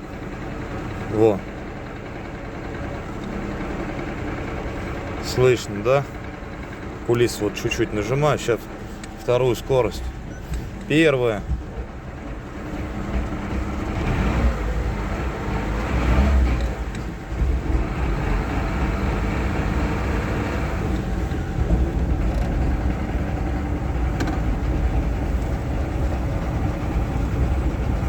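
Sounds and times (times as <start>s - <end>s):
car engine and drivetrain running: 0.0s - 28.0s
gearbox knocking: 20.9s - 28.0s.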